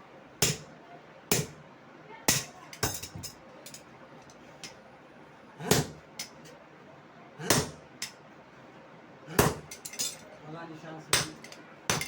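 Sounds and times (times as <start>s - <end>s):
hammer striking metal: 11.2s - 12.0s.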